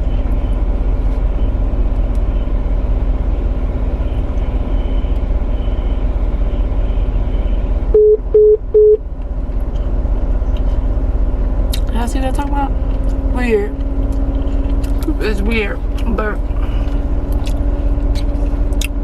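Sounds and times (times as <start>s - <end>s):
short phone beeps: 8.0s - 9.0s.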